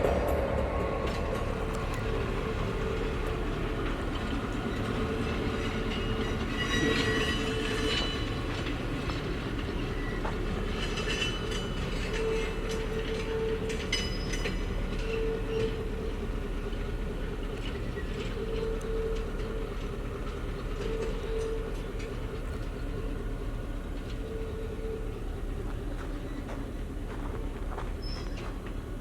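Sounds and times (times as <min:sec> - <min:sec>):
train rumbling along track: 0:00.0 - 0:29.0
train wheels squealing: 0:00.0 - 0:29.0.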